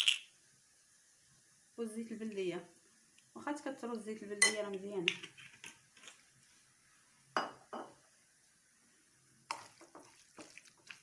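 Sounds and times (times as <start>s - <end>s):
spoon clinking against a bowl: 4.4s - 4.6s.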